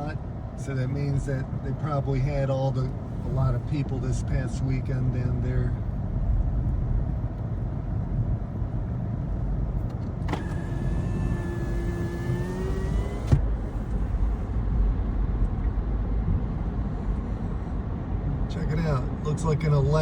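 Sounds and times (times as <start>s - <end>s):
car cabin rumble: 9.3s - 20.0s
window stopping click: 10.2s - 13.5s
power window motor whine: 10.2s - 14.5s.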